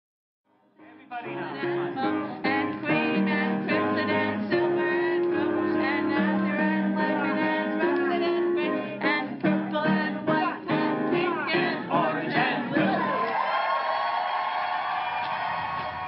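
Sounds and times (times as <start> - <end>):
person singing: 0.8 - 13.3.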